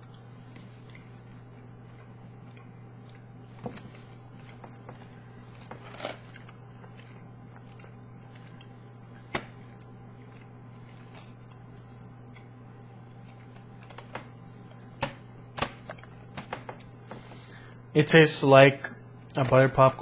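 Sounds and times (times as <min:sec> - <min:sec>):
person chewing sticky candy: 0:00.0 - 0:13.9
steady low hum: 0:00.0 - 0:20.0.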